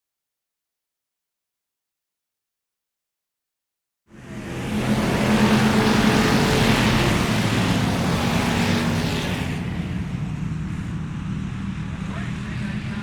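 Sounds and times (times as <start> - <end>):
vehicle engine humming: 4.1 - 13.0.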